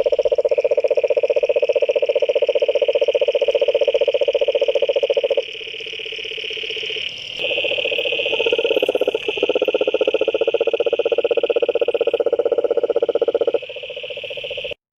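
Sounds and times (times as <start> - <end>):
high-pitched frog trill: 0.0 - 14.8
low frog trill: 0.0 - 14.8.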